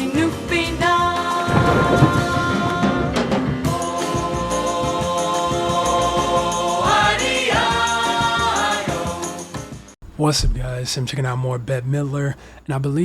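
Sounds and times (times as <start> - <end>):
choir-like singing: 0.1 - 9.8.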